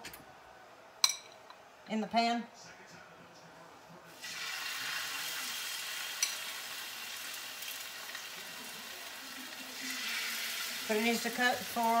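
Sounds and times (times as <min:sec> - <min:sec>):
meat sizzling in a frying pan: 0:04.1 - 0:12.0.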